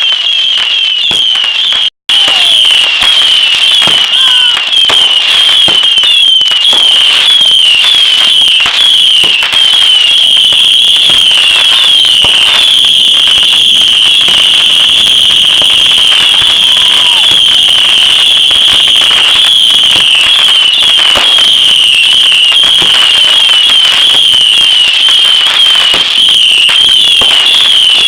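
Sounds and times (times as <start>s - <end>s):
firework crackling pops and bangs: 0.0s - 28.0s
whistling firework: 0.0s - 28.0s.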